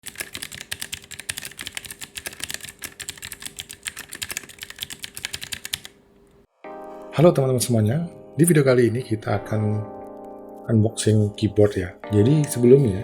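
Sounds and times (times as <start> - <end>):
mechanical keyboard typing: 0.0 - 6.0.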